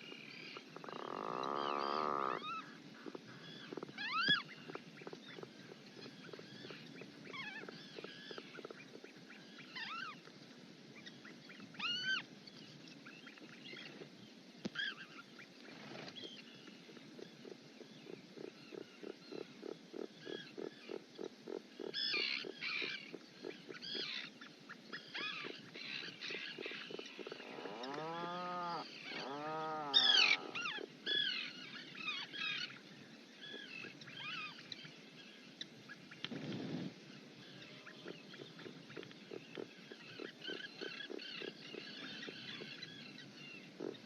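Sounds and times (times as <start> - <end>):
auks calling: 0.5 - 8.9, 25.0 - 32.7.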